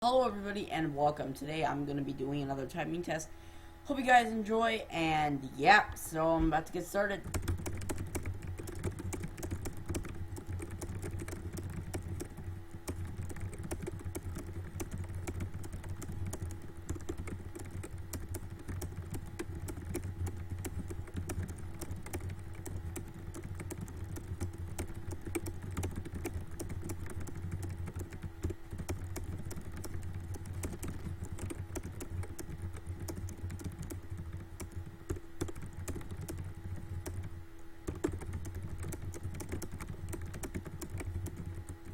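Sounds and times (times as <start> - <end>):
steady low hum: 0.0 - 41.9
fast typing on keyboard: 6.4 - 41.9.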